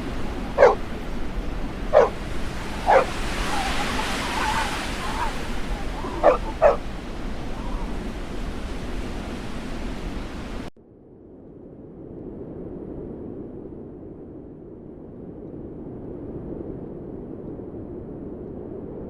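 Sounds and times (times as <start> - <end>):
short loud animal calls: 0.0 - 8.0
steady rushing noise: 0.0 - 10.7.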